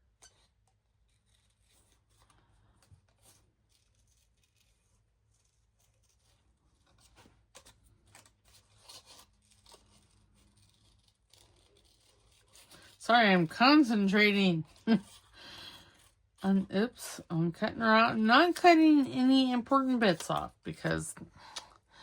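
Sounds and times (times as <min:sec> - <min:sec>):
scissors snipping paper: 0:00.1 - 0:13.0, 0:14.6 - 0:16.4.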